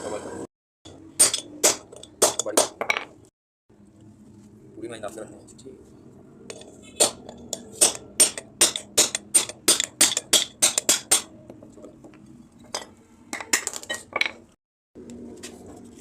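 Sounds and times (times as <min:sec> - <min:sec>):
hammer striking metal: 0:00.9 - 0:02.8, 0:07.0 - 0:11.3.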